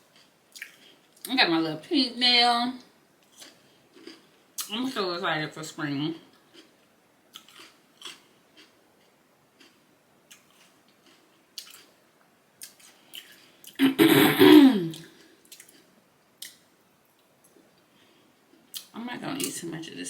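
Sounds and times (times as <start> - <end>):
chewing and mouth clicks: 0.1 - 1.3, 3.2 - 4.7, 6.3 - 12.0, 12.6 - 13.8, 14.9 - 17.8, 18.5 - 18.9.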